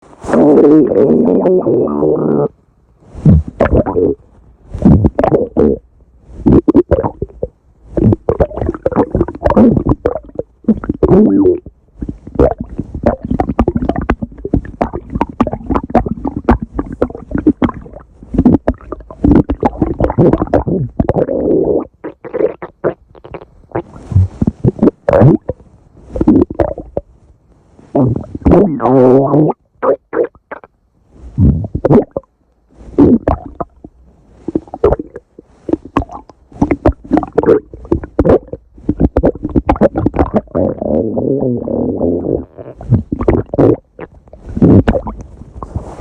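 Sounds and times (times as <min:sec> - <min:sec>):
stomach growling: 0:00.1 - 0:27.1, 0:27.8 - 0:46.0.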